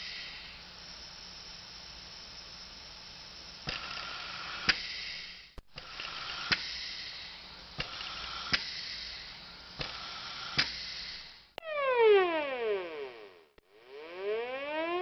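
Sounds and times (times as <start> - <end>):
respirator air hissing: 0.0 - 11.6.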